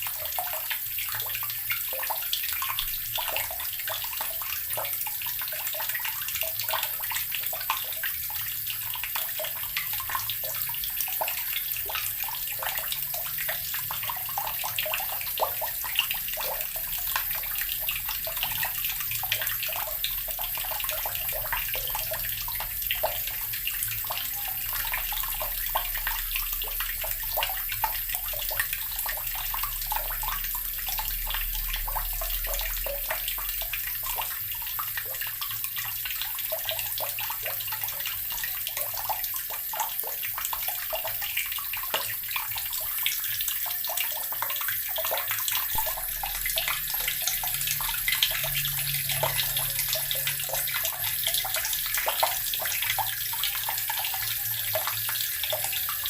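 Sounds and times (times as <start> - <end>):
water running from a tap: 0.0 - 56.0.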